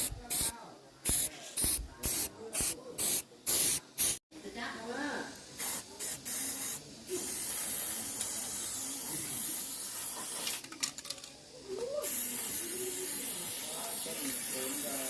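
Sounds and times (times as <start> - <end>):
high hiss of air jet: 12.0 - 15.0.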